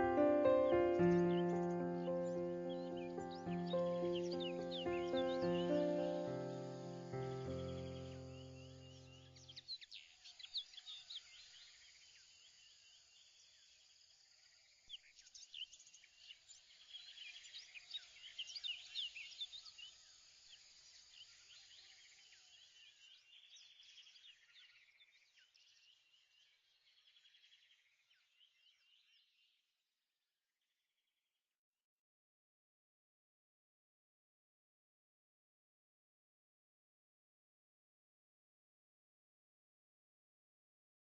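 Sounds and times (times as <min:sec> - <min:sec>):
birds chirping: 0:00.0 - 0:09.6.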